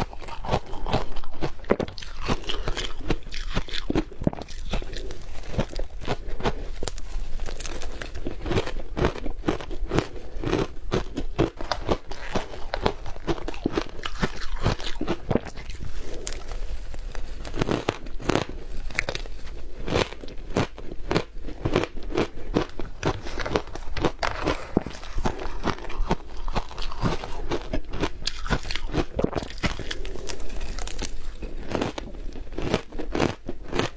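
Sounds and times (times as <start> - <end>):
crunching ice chewing: 0.0 - 33.9.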